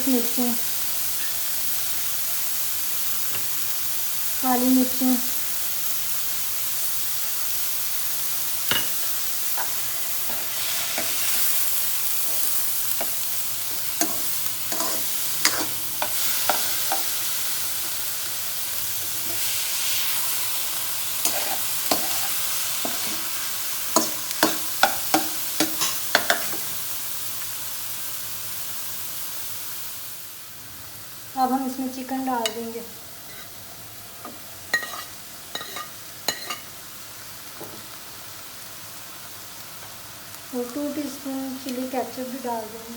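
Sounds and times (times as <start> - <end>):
vegetables sizzling in oil: 0.0 - 42.9
spoon tapping on a pan: 8.7 - 9.0, 24.0 - 26.7, 34.2 - 36.7
spoon scraping a pan: 8.7 - 17.4, 21.2 - 26.8, 32.4 - 33.6, 34.2 - 36.8.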